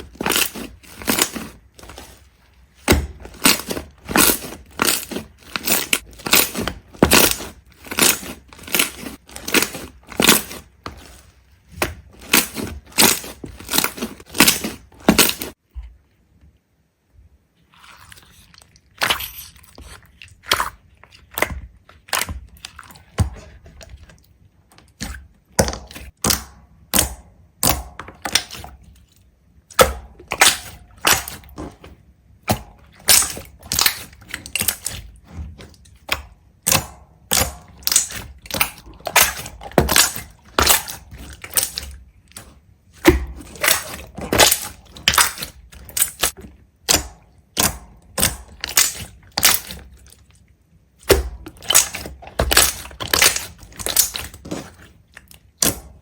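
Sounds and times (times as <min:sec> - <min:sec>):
sharp cracks and crunches: 0:00.0 - 0:15.6, 0:29.7 - 0:50.4, 0:51.0 - 0:56.0.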